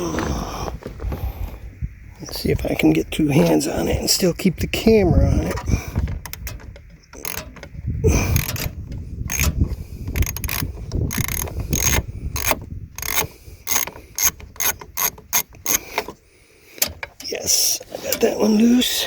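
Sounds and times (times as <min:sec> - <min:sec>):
ratchet wrench clicking: 0:07.2 - 0:16.1.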